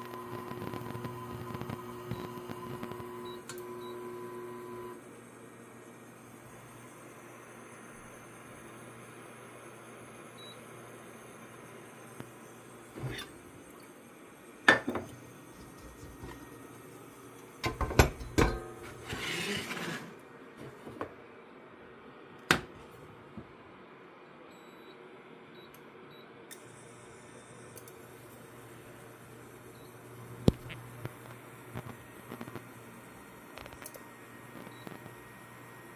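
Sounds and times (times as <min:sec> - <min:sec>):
cookware knocks and clinks: 0:14.7 - 0:15.1, 0:17.6 - 0:18.8.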